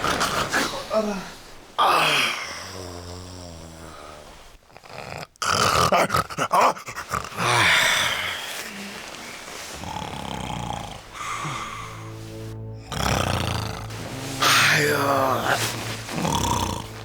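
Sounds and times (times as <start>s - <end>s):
loud rasping snoring: 2.7s - 8.7s, 9.7s - 12.2s, 12.8s - 17.0s.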